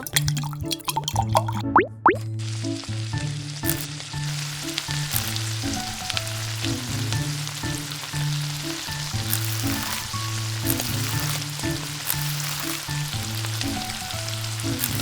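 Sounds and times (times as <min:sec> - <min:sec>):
background music: 0:00.0 - 0:15.0
food sizzling in hot oil: 0:02.2 - 0:15.0.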